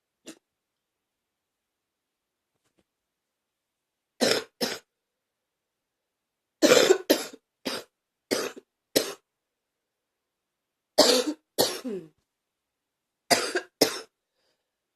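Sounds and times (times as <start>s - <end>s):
person coughing: 6.6s - 9.2s, 11.0s - 12.2s, 13.3s - 14.2s.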